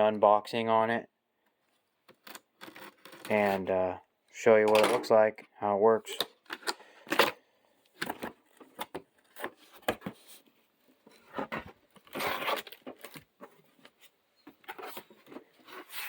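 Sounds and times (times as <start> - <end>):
packaging rustling and tearing: 11.2 - 13.4.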